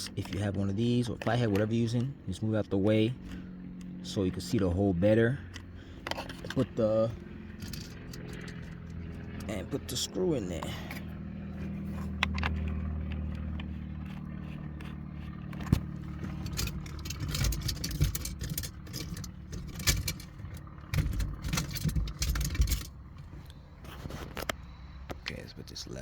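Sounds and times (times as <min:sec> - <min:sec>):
steady low hum: 0:00.0 - 0:26.0
screwdriver and screws clicking: 0:12.2 - 0:22.9.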